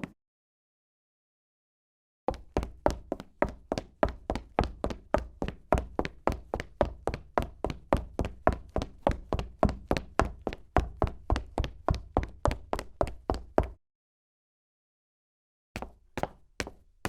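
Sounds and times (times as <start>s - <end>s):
woman's footsteps walking quickly: 2.3s - 13.8s, 15.8s - 17.0s.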